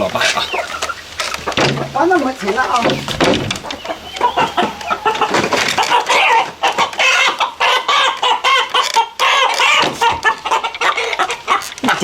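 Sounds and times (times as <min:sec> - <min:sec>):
rooster clucking rapidly: 0:02.7 - 0:12.0.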